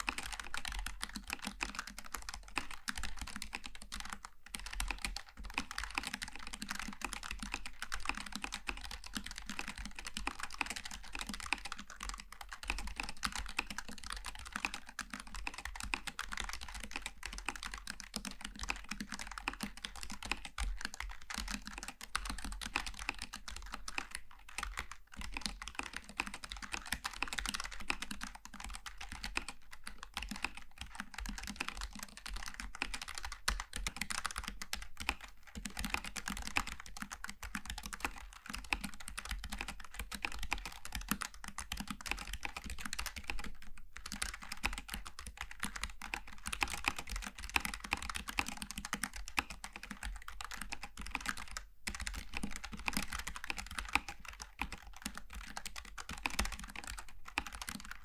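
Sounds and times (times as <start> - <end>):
fast keyboard typing: 0.0 - 58.0.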